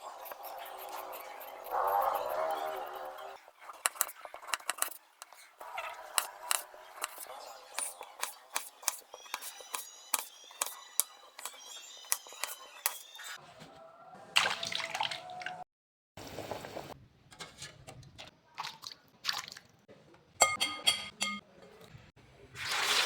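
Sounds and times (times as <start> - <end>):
water splashing and sloshing: 14.4 - 15.6, 18.2 - 19.9, 22.6 - 23.0.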